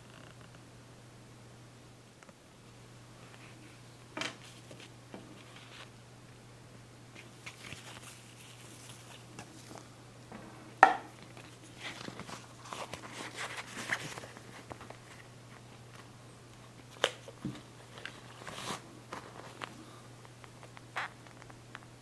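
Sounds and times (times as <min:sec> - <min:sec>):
steady low hum: 0:00.0 - 0:22.0
packaging crinkling and rustling: 0:07.2 - 0:09.9, 0:11.2 - 0:16.1, 0:16.9 - 0:19.8.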